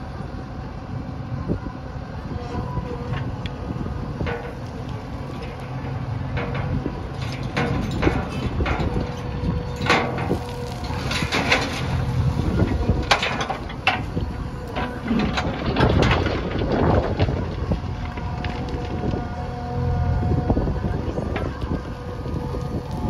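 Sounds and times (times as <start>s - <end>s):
diesel engine running: 0.0s - 23.0s
metallic clanks and scrapes: 5.3s - 14.1s.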